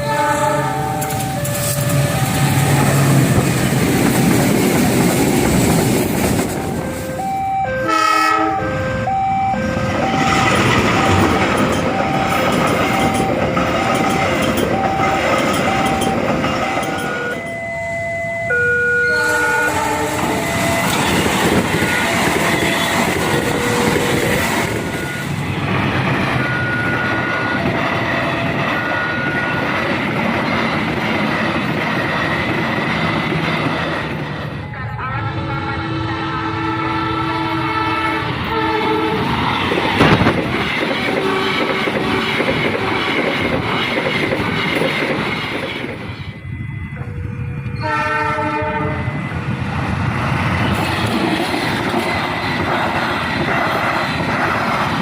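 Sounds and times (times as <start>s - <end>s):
train horn blasts: 0.0s - 2.5s, 6.8s - 9.3s, 18.5s - 24.4s, 34.8s - 39.4s, 41.2s - 42.2s, 47.0s - 49.3s
train wheels clattering on rails: 0.8s - 7.0s, 9.9s - 17.6s, 19.9s - 34.5s, 38.8s - 47.8s, 49.3s - 55.0s.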